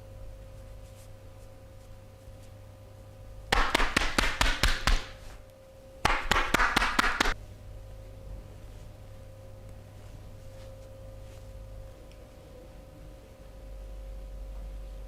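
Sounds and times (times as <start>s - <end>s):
hands slapping body in massage: 3.5s - 5.4s, 6.0s - 7.4s.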